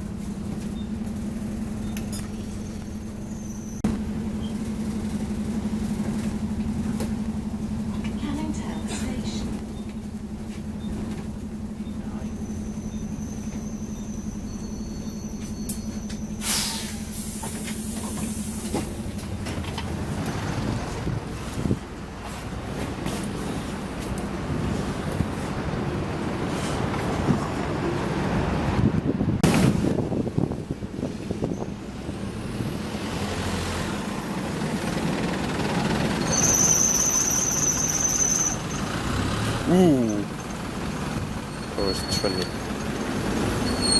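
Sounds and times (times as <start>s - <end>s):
bus engine running: 0.0s - 43.9s
road noise: 0.0s - 43.9s
air hiss: 16.4s - 18.7s
high-pitched squeal: 41.5s - 42.7s.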